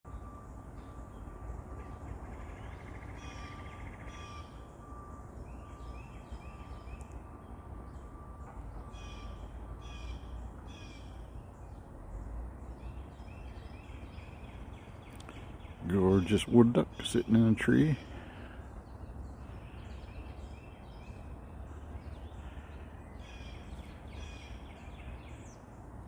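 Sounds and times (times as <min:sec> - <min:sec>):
low background rumble: 0:00.1 - 0:26.0
birds making harsh calls: 0:01.8 - 0:05.0, 0:12.8 - 0:25.7.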